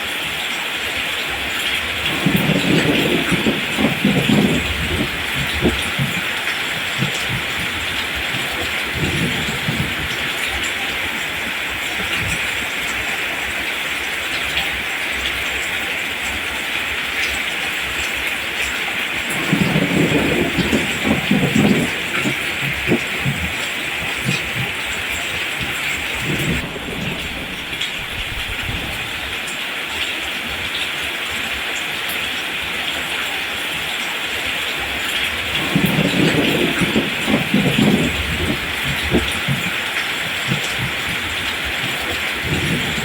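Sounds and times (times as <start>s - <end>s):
rain falling on plants: 0.0s - 43.0s
heavier low rumbling: 2.1s - 10.2s, 19.3s - 29.4s, 35.6s - 41.5s.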